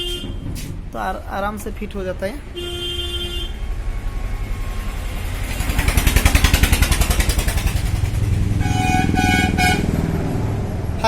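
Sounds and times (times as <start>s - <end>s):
vehicle horn beeping: 0.0s - 0.7s, 2.5s - 3.8s, 8.6s - 10.1s
motorcycle engine running: 2.7s - 11.0s.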